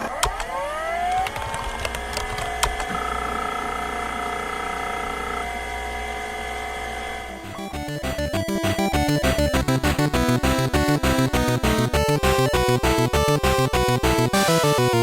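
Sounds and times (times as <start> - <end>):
low hum: 0.0 - 8.2
electric machine whine: 0.0 - 15.0.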